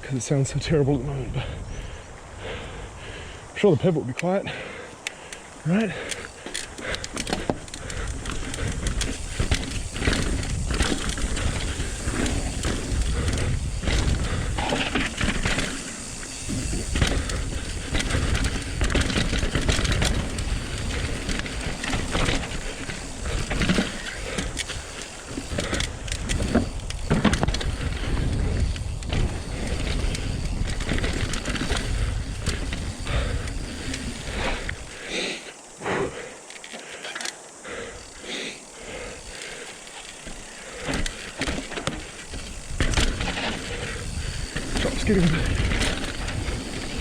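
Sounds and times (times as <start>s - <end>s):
bike rattles and clicks: 0.0s - 47.0s
bike tyre noise on dirt: 0.0s - 47.0s.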